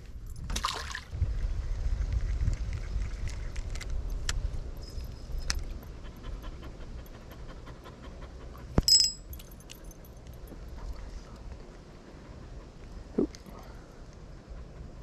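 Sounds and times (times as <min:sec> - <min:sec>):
dog panting: 0:05.6 - 0:08.8, 0:10.5 - 0:15.0.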